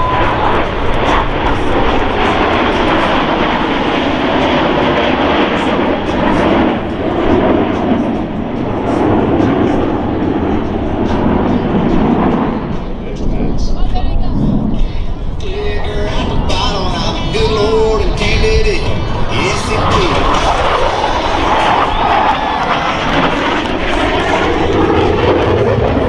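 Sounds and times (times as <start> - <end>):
jet engines roaring: 0.0 - 26.0.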